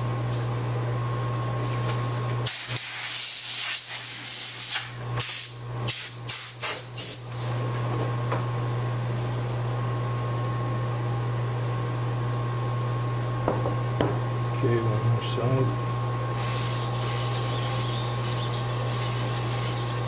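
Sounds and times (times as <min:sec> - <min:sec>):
compressed air hissing: 0:02.5 - 0:07.2
steady low hum: 0:04.6 - 0:20.0.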